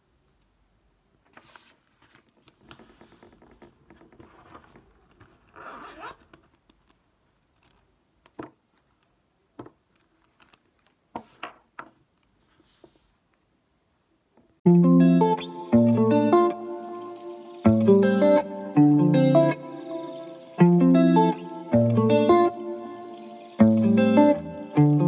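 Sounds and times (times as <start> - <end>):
rustling and scratching: 1.3 - 6.5, 9.6 - 13.3.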